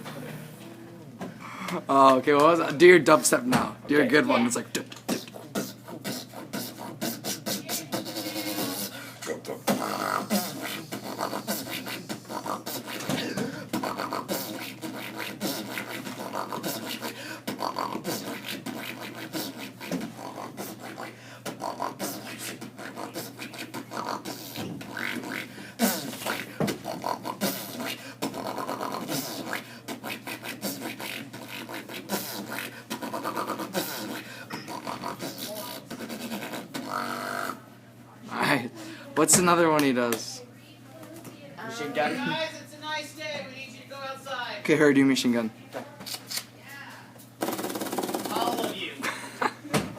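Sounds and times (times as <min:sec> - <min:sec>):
boy beatboxing: 0:04.4 - 0:37.6, 0:47.4 - 0:48.9.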